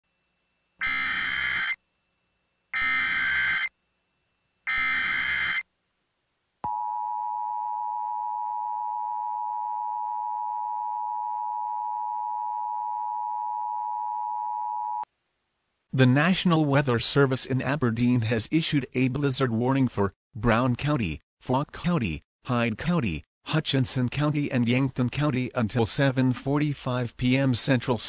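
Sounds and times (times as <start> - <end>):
buzzy digital data bursts: 0.8 - 1.8, 2.8 - 3.7, 4.7 - 5.6
two-tone attention signal: 0.8 - 1.8, 4.7 - 5.6.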